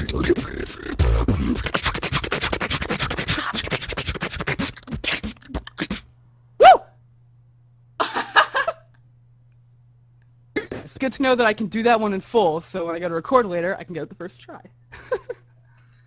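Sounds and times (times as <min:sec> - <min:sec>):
person beatboxing: 0:00.0 - 0:05.8.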